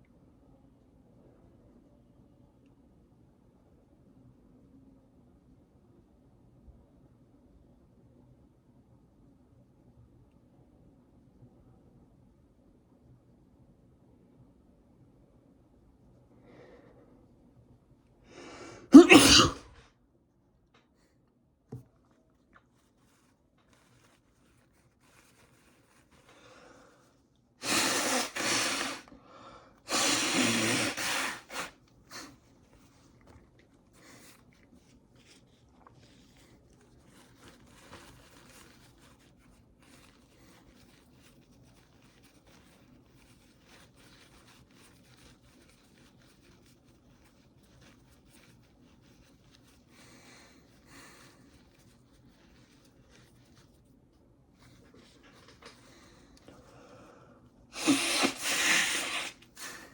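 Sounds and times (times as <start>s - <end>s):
breathing: 16.3s - 17.4s, 18.2s - 18.9s, 26.2s - 27.2s, 29.0s - 29.9s, 49.8s - 51.8s, 55.0s - 59.9s
person sneezing: 18.6s - 19.8s, 27.6s - 29.1s, 29.9s - 32.3s, 57.7s - 59.9s
tissue rustling: 22.1s - 26.7s, 32.1s - 56.4s.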